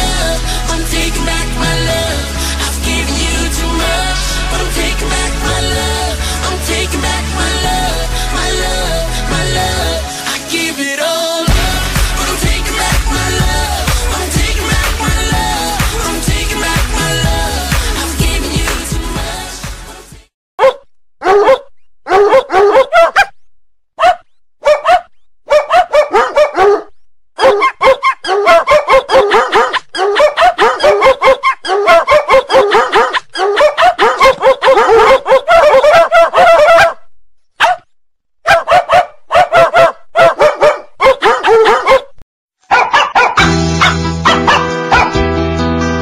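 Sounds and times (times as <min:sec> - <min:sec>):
dog barking ringtone: 0:20.6 - 0:23.3, 0:24.0 - 0:37.0, 0:37.6 - 0:37.8, 0:38.5 - 0:42.0, 0:42.7 - 0:45.2.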